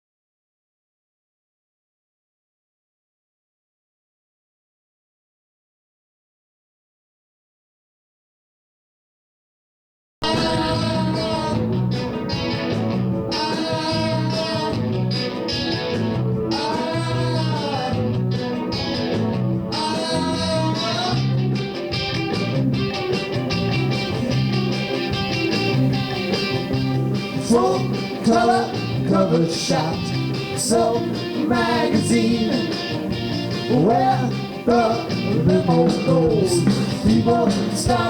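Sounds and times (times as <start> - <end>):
bass line: 10.2 - 38.0
electric guitar lead lines: 10.2 - 38.0.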